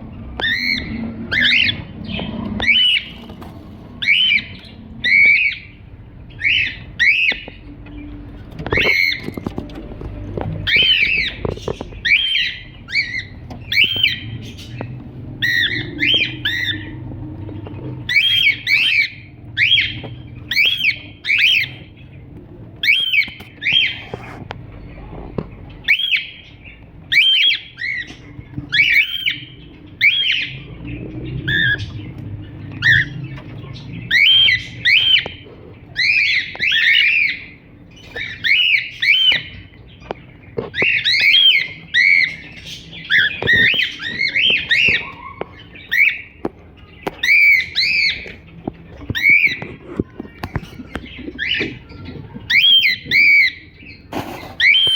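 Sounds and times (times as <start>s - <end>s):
cockatiel chirping: 0.4s - 3.3s, 4.0s - 8.1s, 10.6s - 14.8s, 15.4s - 17.0s, 18.1s - 21.9s, 22.8s - 24.4s, 25.8s - 30.6s, 32.7s - 39.7s, 40.6s - 46.4s, 47.1s - 48.3s, 49.1s - 54.9s.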